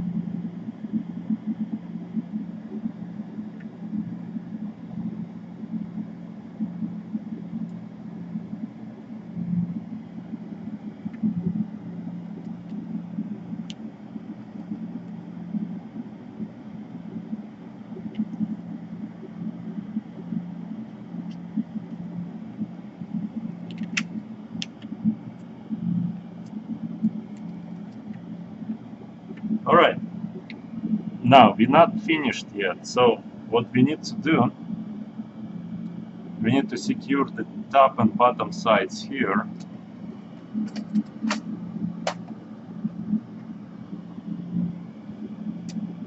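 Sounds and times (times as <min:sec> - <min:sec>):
steady low hum: 0:00.0 - 0:46.0
small sharp clicks: 0:23.6 - 0:25.5, 0:40.6 - 0:42.4.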